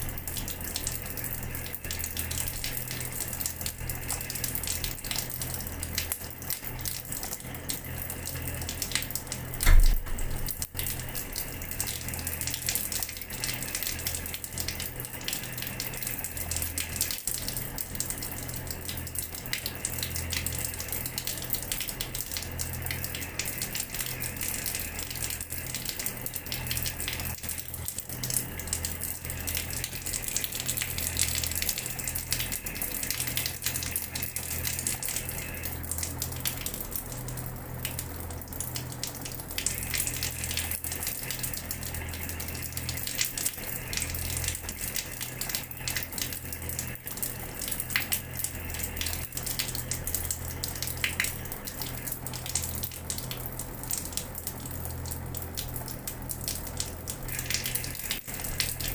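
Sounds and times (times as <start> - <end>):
tap water splashing on floor: 8.9 - 11.1
loud thump: 9.6 - 10.2.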